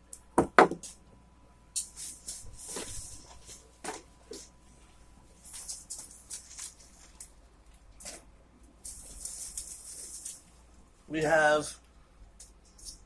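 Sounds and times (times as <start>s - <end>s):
rustling of handled figures: 1.8s - 11.0s.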